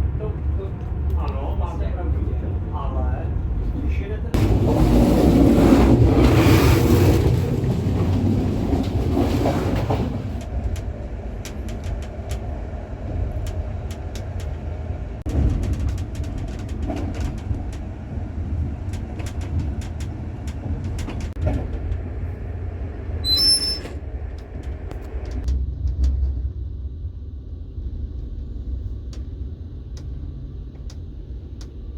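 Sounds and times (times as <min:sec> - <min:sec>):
train rumbling on rails: 0:00.0 - 0:31.9
high wheel squeal: 0:23.2 - 0:24.0.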